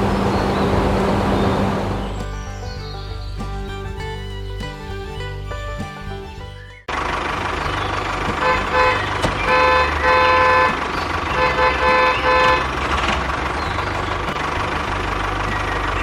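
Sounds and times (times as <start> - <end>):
low engine rumble: 0.0 - 16.0
vehicle horn honking: 8.2 - 13.2.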